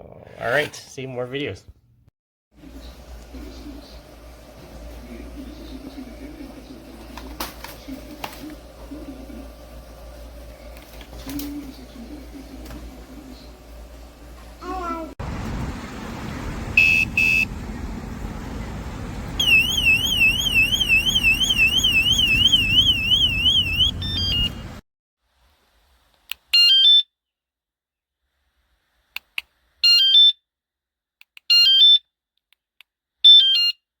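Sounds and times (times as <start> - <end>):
stepped electronic chirps: 19.4 - 24.6
bike alarm siren warbling: 19.4 - 24.8.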